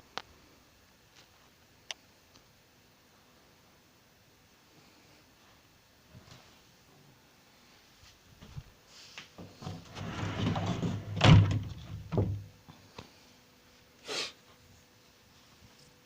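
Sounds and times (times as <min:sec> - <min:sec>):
rumbling knocks indoors: 0:10.0 - 0:12.5.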